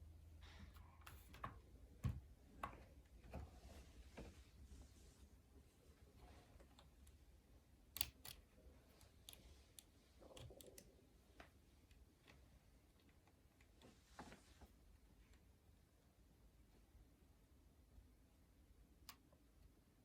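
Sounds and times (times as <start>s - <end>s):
mechanical keyboard key clicks: 7.9s - 8.4s.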